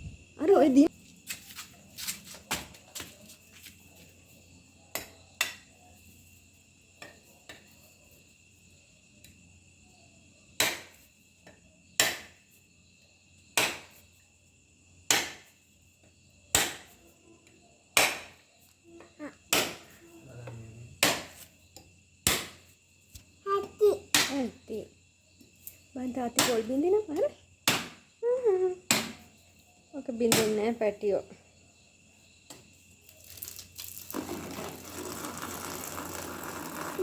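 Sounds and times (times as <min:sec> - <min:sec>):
coconut being struck: 0:12.0 - 0:12.4, 0:13.6 - 0:13.9, 0:18.0 - 0:18.4, 0:19.5 - 0:19.9, 0:21.0 - 0:21.4, 0:22.2 - 0:22.6, 0:27.6 - 0:28.0, 0:28.9 - 0:29.2.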